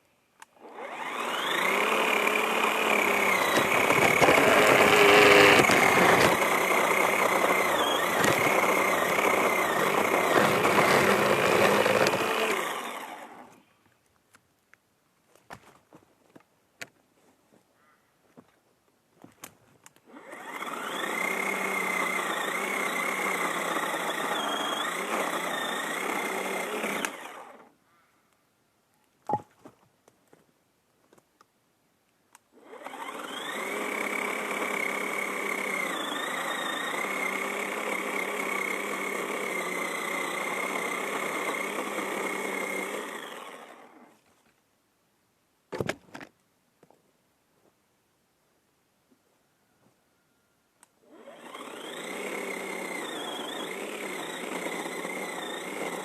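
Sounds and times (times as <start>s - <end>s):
battery chainsaw cutting wood: 0.5s - 13.6s, 20.0s - 27.7s, 32.6s - 44.2s, 51.0s - 56.0s.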